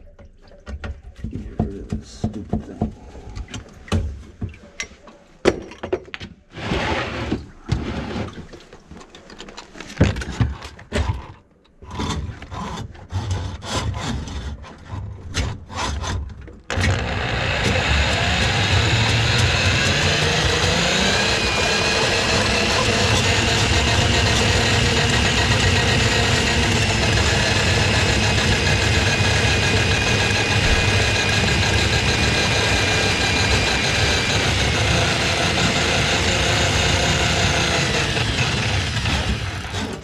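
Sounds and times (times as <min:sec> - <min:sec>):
drain-cleaning machine motor running: 0:16.7 - 0:40.0.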